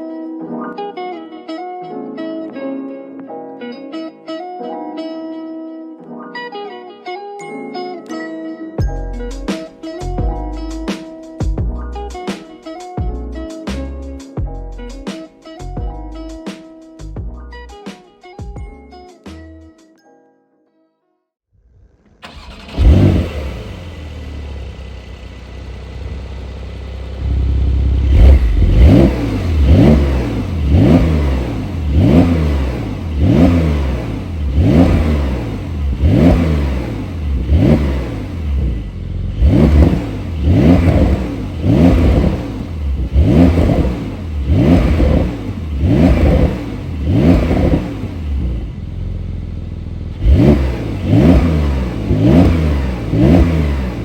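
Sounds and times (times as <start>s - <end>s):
car engine starting and idling: 21.6s - 54.0s
car engine revving: 21.7s - 54.0s.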